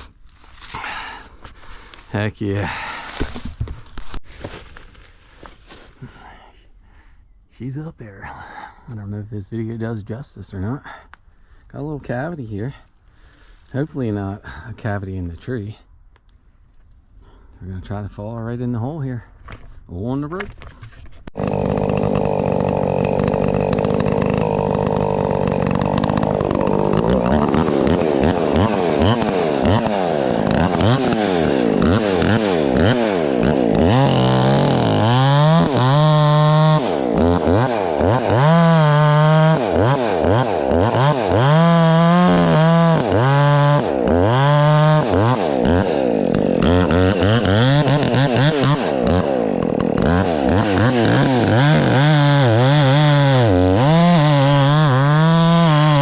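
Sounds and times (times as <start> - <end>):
chainsaw cutting wood: 21.2 - 56.0.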